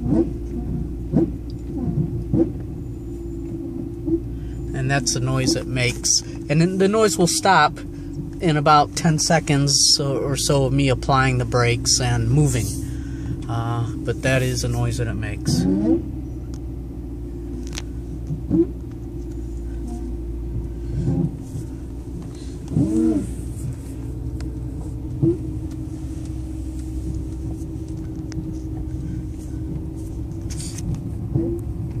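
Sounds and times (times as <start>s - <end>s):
car engine running: 0.0s - 32.0s
short rising engine groans: 9.5s - 32.0s.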